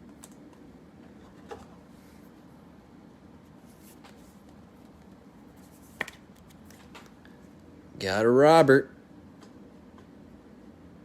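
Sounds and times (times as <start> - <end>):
cards sliding on cards: 3.6 - 7.1.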